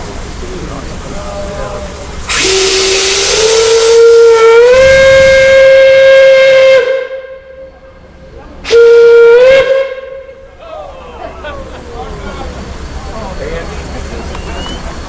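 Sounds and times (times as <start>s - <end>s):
steam hissing: 0.0s - 6.6s
steam whistle blowing: 2.3s - 7.8s, 8.6s - 10.5s.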